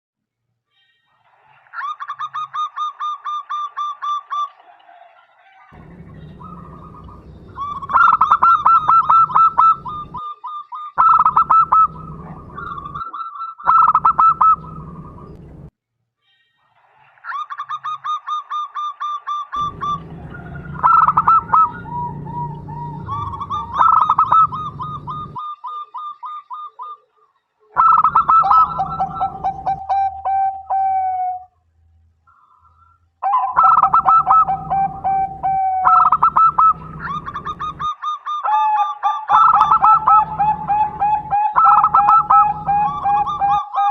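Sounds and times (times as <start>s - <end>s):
dove cooing: 5.7s - 15.7s, 19.6s - 27.1s, 27.7s - 31.5s, 33.2s - 43.9s
low rumble: 5.8s - 10.2s, 11.6s - 13.0s, 14.5s - 15.7s, 19.6s - 25.4s, 34.6s - 37.9s, 39.9s - 41.5s.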